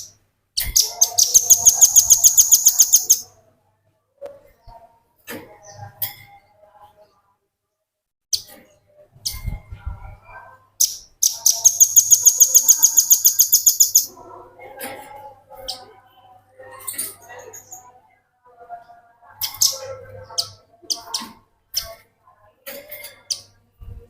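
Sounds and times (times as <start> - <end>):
bird calling with rapid trill: 0.0 - 3.3, 10.8 - 14.1.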